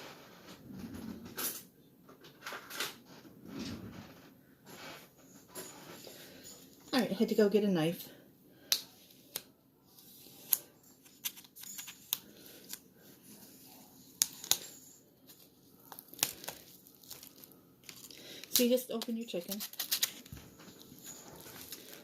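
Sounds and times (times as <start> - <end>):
knife tearing plastic film: 15.9 - 22.0.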